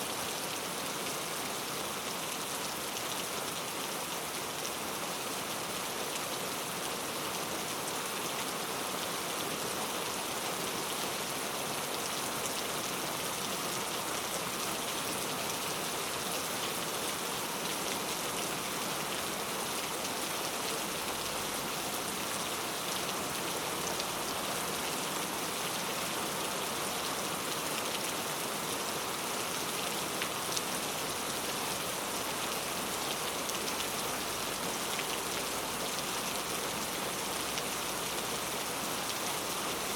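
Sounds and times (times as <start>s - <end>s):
rain pattering: 12.0s - 39.9s.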